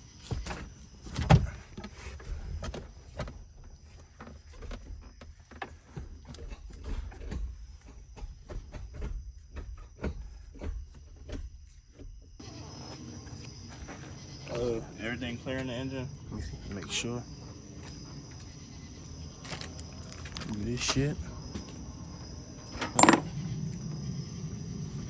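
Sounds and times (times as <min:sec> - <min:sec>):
insects chirring: 0:00.0 - 0:25.0
clicks and knocks of handling: 0:00.3 - 0:12.2, 0:19.3 - 0:21.8.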